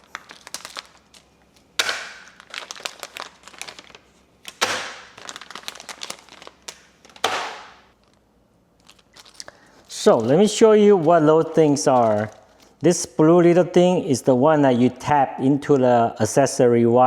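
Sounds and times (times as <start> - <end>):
small crackles: 0.0 - 7.3, 7.9 - 8.2, 8.8 - 12.8
plastic packaging crinkling: 0.0 - 12.8.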